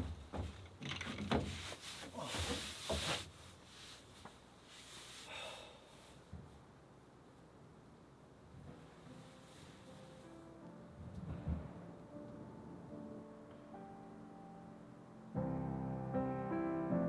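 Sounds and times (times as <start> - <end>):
rustling handling noises: 0.1 - 6.2.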